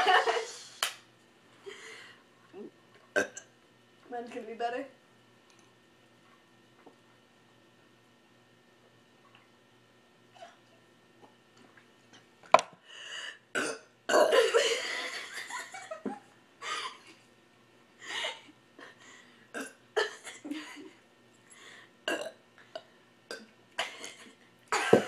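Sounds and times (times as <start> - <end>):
person burping: 2.6 - 3.5, 13.6 - 14.5, 19.5 - 20.2, 22.1 - 22.4.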